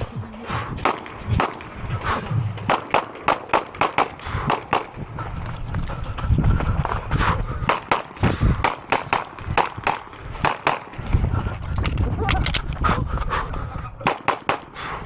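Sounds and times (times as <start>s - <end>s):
pistol shots: 2.7s - 4.9s, 7.7s - 10.9s, 14.0s - 14.7s.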